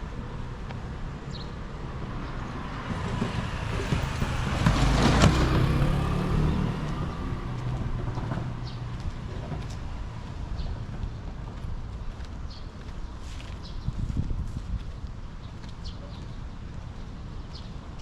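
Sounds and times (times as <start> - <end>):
car driving past: 2.1 - 10.4.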